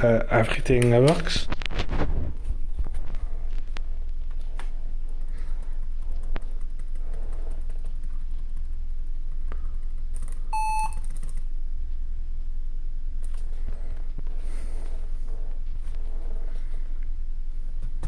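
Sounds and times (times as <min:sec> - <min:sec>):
laptop startup beep: 0:10.6 - 0:11.0.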